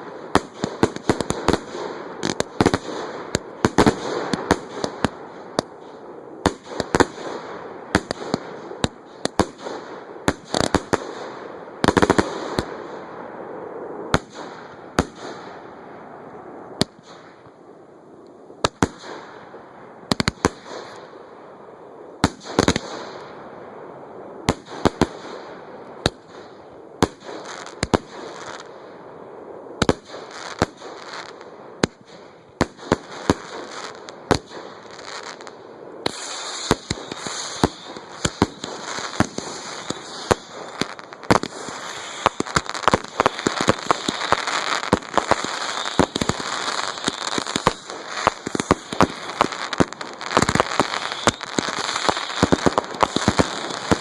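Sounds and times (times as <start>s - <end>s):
fireworks crackle: 0.0s - 13.0s, 20.1s - 21.1s, 29.7s - 54.0s
fireworks bangs: 0.0s - 13.1s, 29.8s - 54.0s.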